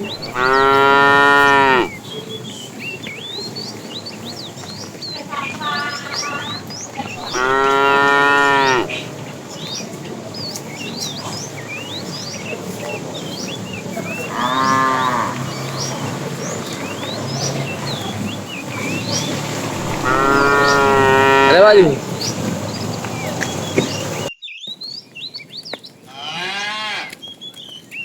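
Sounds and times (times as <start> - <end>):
cattle mooing: 0.0 - 2.0, 7.0 - 9.0, 14.3 - 16.2, 19.5 - 22.0
small birds chirping: 0.0 - 26.4, 27.1 - 28.0.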